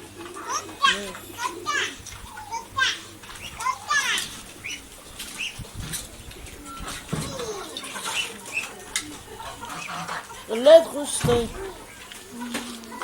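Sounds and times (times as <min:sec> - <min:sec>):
poultry chirping and calling: 0:00.0 - 0:13.0.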